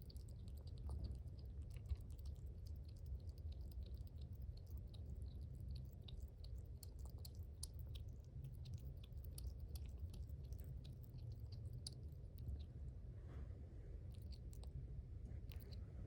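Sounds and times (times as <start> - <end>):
pet chewing dry food: 0.0 - 12.8, 14.0 - 16.0
steady low hum: 0.0 - 16.0.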